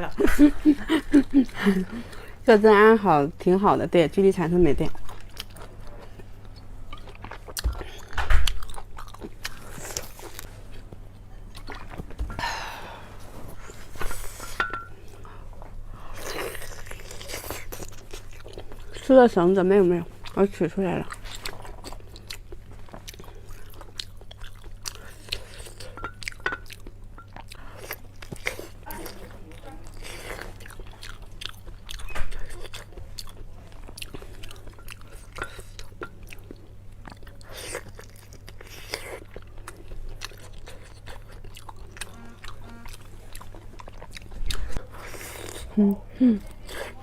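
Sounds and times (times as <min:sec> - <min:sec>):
low electrical hum: 0:00.0 - 0:47.0
person chewing and biting food: 0:05.1 - 0:12.1, 0:21.1 - 0:29.2, 0:29.9 - 0:45.8.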